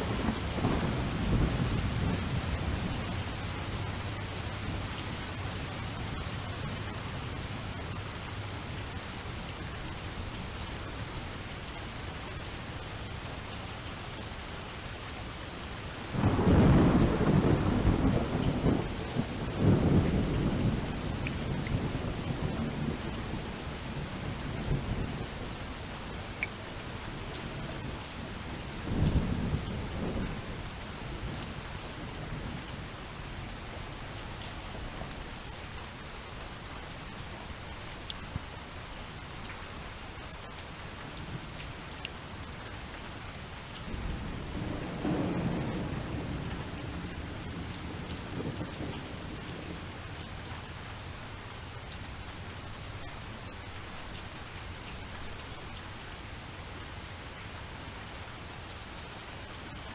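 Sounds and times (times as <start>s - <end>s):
thunder rumbling: 0.0s - 4.1s, 16.2s - 23.1s, 44.0s - 49.8s
steady rain: 0.0s - 59.9s.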